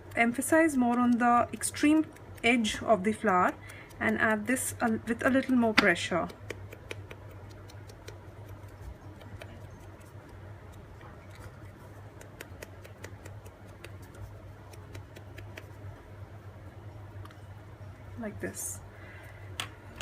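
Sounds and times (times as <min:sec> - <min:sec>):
sponge dauber tapping paper: 0:00.0 - 0:15.8
steady low hum: 0:00.0 - 0:20.0.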